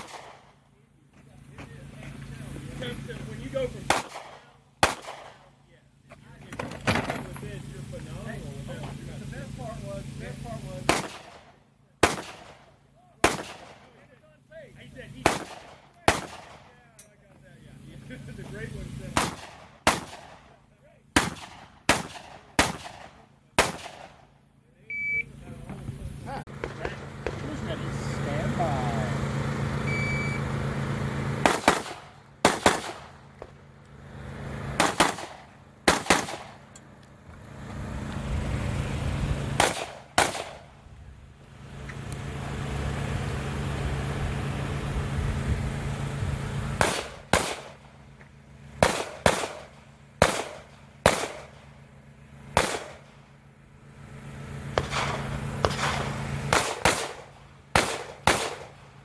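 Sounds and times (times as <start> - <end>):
gunshots: 0.0 - 0.6, 3.8 - 5.6, 10.8 - 14.0, 15.2 - 16.8, 19.1 - 24.3, 26.5 - 27.7, 31.4 - 33.6, 34.8 - 36.6, 39.6 - 40.7, 46.8 - 47.9, 48.8 - 51.7, 52.5 - 53.2, 54.8 - 58.9
shot timer beep: 24.9 - 25.3, 29.8 - 30.4.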